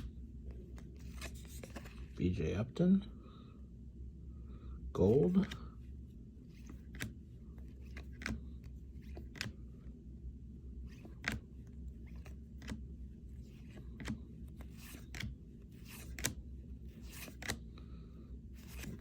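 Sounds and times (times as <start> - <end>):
cards sliding: 0.0 - 2.2, 6.4 - 9.7, 10.8 - 17.8, 18.5 - 19.0
cards clicking: 6.5 - 9.6, 10.9 - 12.9, 13.5 - 17.6, 18.6 - 19.0.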